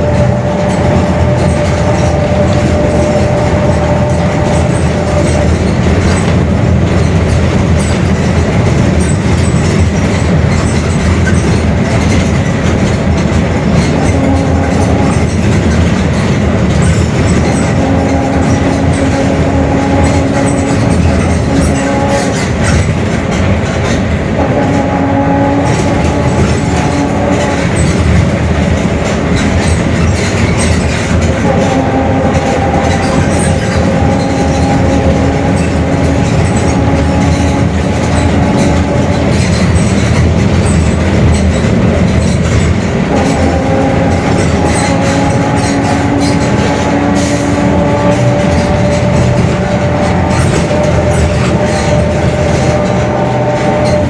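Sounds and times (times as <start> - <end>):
bus engine and road noise: 0.0 - 54.0.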